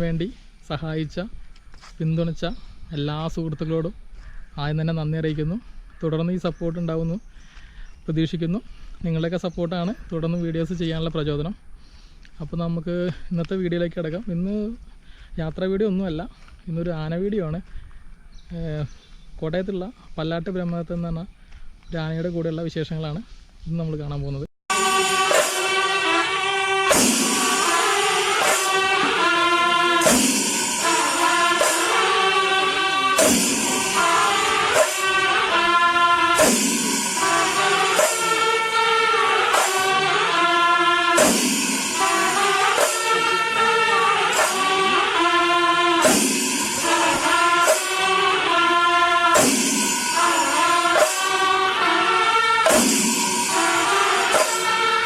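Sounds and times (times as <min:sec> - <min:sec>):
jingling percussion: 0:24.7 - 0:55.0.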